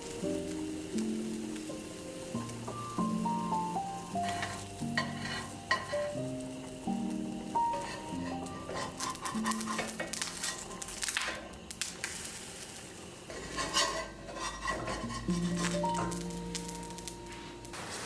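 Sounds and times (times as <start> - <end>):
food sizzling in a pan: 0.0 - 18.0
metal spoon scraping a pot: 4.2 - 6.1, 7.7 - 10.8, 13.3 - 16.1.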